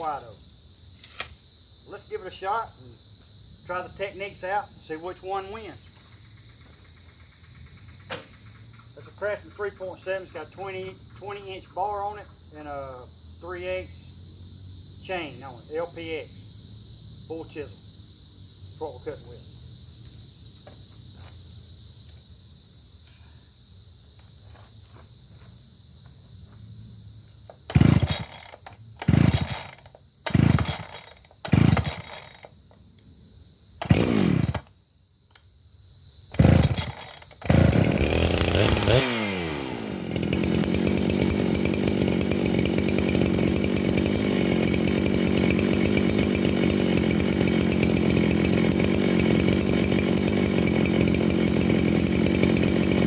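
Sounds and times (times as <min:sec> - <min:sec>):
chainsaw pull-starting: 0:27.5 - 0:32.6, 0:33.8 - 0:34.7, 0:36.3 - 0:53.0
chainsaw engine running: 0:27.6 - 0:32.5, 0:33.8 - 0:34.7, 0:36.3 - 0:53.0.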